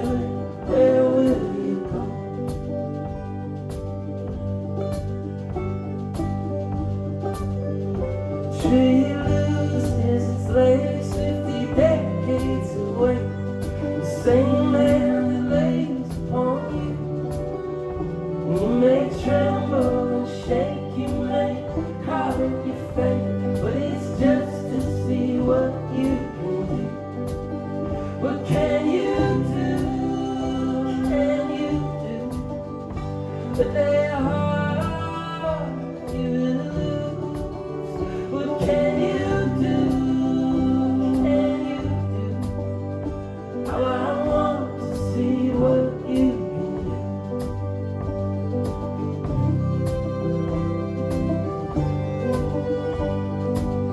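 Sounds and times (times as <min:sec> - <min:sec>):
folk band playing live: 0:00.0 - 0:53.9
person singing lead vocal: 0:00.0 - 0:53.9.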